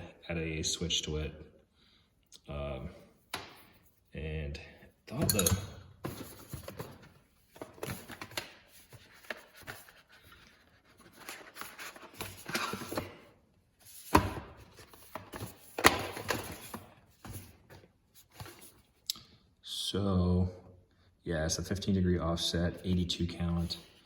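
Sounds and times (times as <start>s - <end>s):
metal wrenches clinking: 5.1s - 5.8s.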